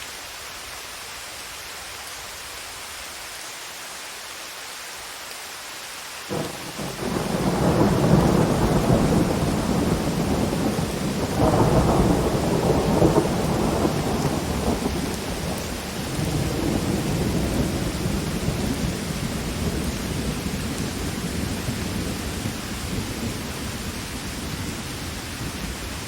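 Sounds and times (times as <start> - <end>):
heavy rain: 0.0 - 26.0
rolling thunder: 6.3 - 24.7.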